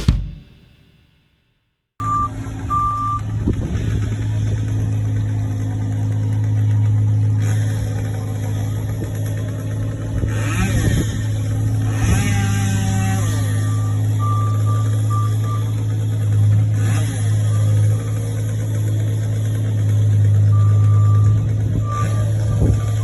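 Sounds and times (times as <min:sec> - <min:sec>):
heavy machinery engine running: 0:00.0 - 0:00.6, 0:02.0 - 0:23.0
reversing alarm beeping: 0:02.0 - 0:03.3, 0:12.8 - 0:15.9, 0:20.4 - 0:23.0.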